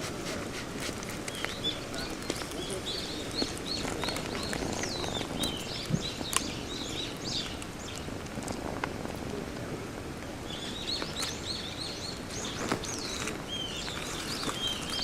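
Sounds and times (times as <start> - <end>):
steady hiss: 0.0 - 15.0
small bird chirping: 1.1 - 8.1, 10.5 - 15.0.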